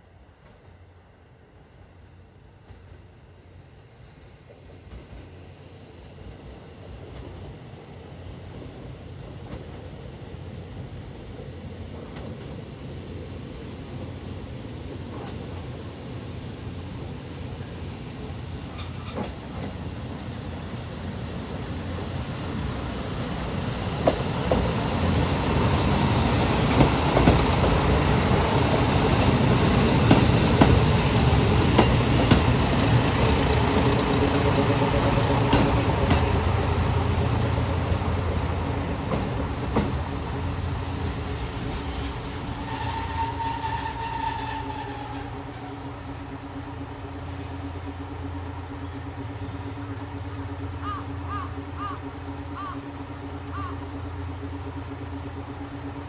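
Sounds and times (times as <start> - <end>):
diesel railcar engine accelerating: 0.0 - 56.0
wheels clicking over rail joints: 18.0 - 56.0
thin wheel squeal: 40.0 - 48.7.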